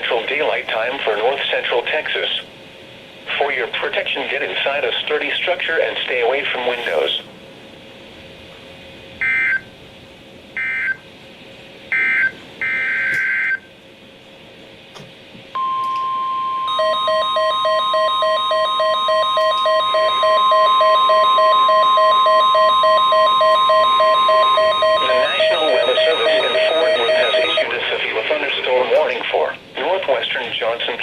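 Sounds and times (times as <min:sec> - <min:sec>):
steady warning alarm tone: 0:09.2 - 0:09.7, 0:11.9 - 0:13.7, 0:15.6 - 0:28.8
rapidly pulsing beep: 0:15.6 - 0:28.2
warbling data bursts: 0:23.8 - 0:28.4.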